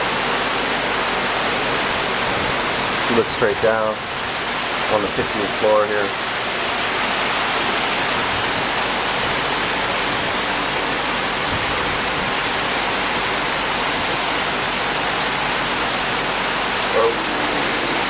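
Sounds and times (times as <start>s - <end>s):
heavy rain on metal roofs: 0.0s - 18.0s.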